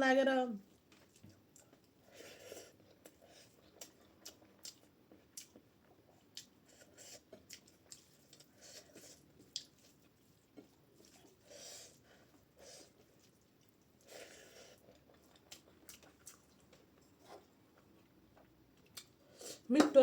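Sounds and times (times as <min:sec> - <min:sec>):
chewing food: 0:00.6 - 0:19.3
small wet clicks and squishes: 0:09.4 - 0:11.3.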